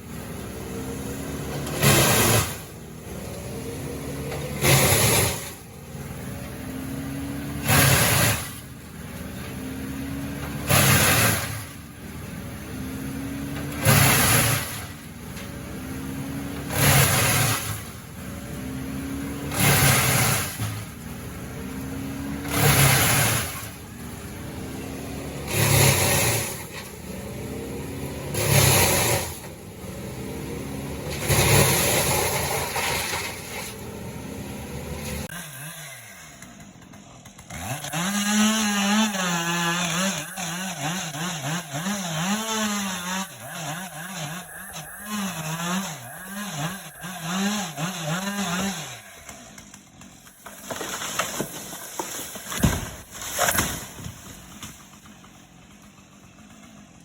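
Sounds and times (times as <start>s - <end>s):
wood chipper engine humming: 0.0s - 57.0s
branches being chipped: 21.5s - 56.9s.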